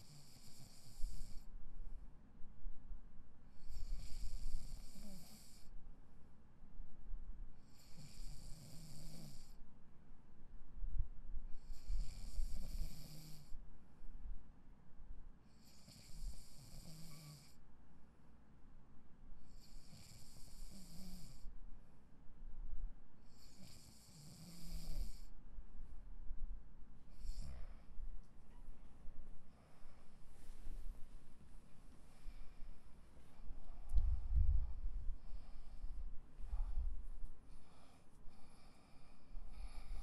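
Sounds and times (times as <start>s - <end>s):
person snoring: 0.0s - 1.4s, 3.7s - 5.7s, 7.8s - 9.6s, 11.6s - 13.5s, 15.6s - 17.6s, 19.6s - 21.4s, 23.3s - 25.3s.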